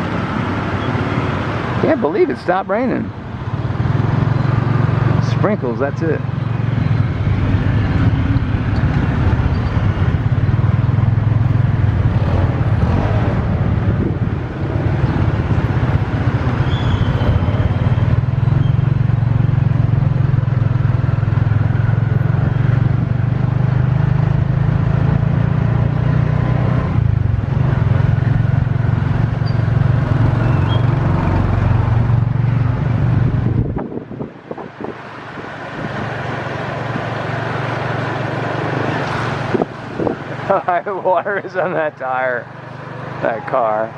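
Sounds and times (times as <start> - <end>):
road and wind noise: 0.0 - 43.9
vehicle engine drone: 0.0 - 43.9.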